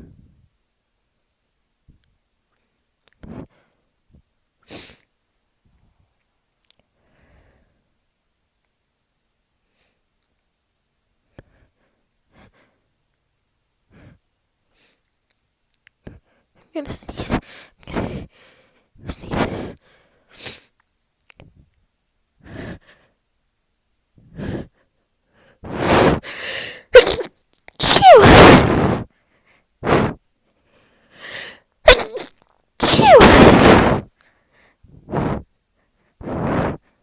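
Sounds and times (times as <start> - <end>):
sniffs: 3.2 - 3.8, 4.6 - 5.1, 11.4 - 12.8, 13.9 - 15.1, 16.0 - 20.7, 25.4 - 37.0
person sneezing: 19.1 - 19.7, 25.7 - 26.2, 26.9 - 29.1, 29.8 - 30.2, 31.9 - 34.1, 36.2 - 36.8
gasping in-breaths: 30.0 - 31.7.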